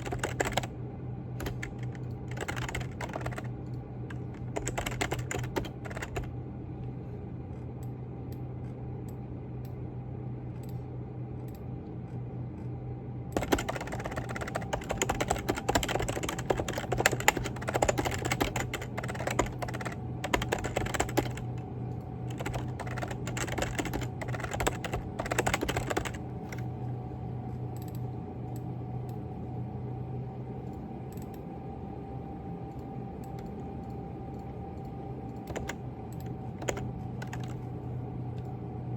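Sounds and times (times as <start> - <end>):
keyboard typing: 0.0 - 0.7, 1.4 - 6.3, 13.4 - 26.6, 35.4 - 37.7
steady low hum: 0.0 - 38.9.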